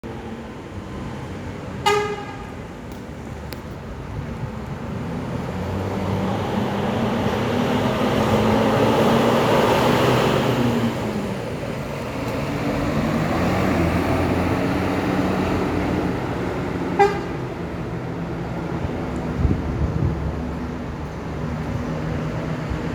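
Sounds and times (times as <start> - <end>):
buses passing on a road: 0.0 - 22.9
short horn toot: 17.0 - 17.4.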